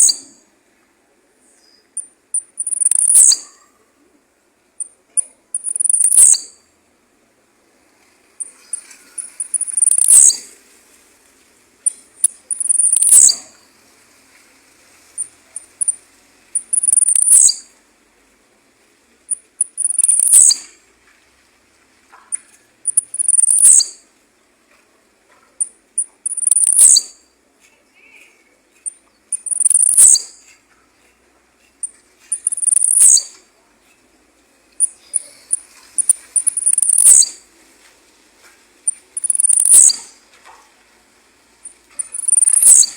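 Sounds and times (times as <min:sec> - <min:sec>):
bird singing high sharp song: 0:00.0 - 0:00.4, 0:01.6 - 0:03.6, 0:04.8 - 0:06.6, 0:08.4 - 0:10.5, 0:11.9 - 0:13.6, 0:16.6 - 0:17.7, 0:19.3 - 0:20.7, 0:22.3 - 0:24.0, 0:25.6 - 0:27.2, 0:28.0 - 0:30.5, 0:31.8 - 0:33.4, 0:34.8 - 0:37.4, 0:38.9 - 0:40.1, 0:41.7 - 0:42.9.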